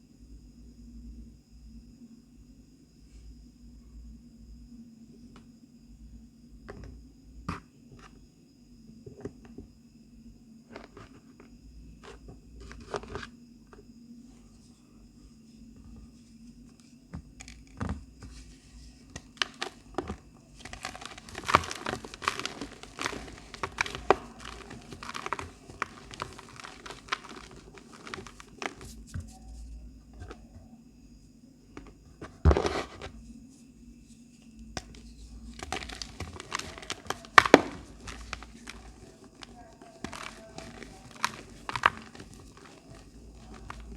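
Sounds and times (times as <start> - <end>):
chalk crunching by hand: 20.6 - 29.7, 34.8 - 43.9.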